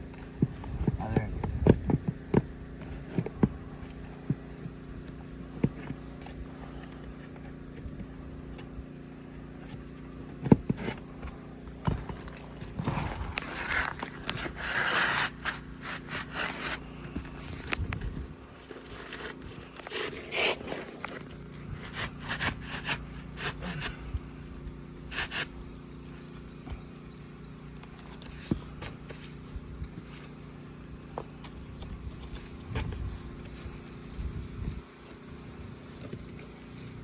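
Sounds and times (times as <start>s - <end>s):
faint steady hum: 0.0s - 37.0s
shingles scraping and rubbing: 9.7s - 26.6s.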